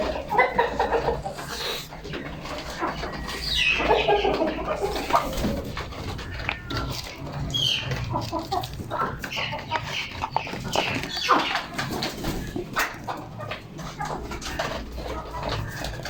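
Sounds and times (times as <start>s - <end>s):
baby parrots squawking: 3.1s - 5.5s, 6.2s - 12.4s.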